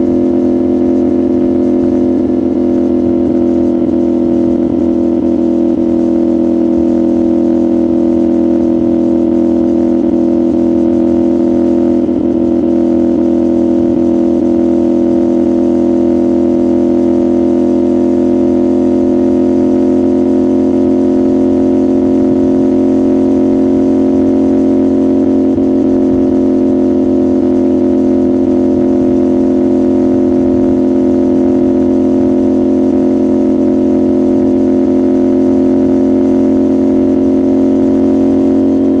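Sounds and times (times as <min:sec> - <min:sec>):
motorcycle engine cruising: 0:00.0 - 0:39.0.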